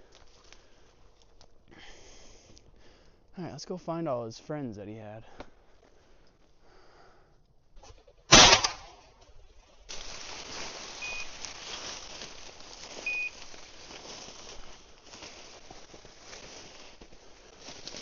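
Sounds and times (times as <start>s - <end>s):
loud sharp bang: 8.3s - 9.0s
boots rustling through dry grass: 9.6s - 18.0s
short high beeps: 11.0s - 11.3s, 13.1s - 13.3s.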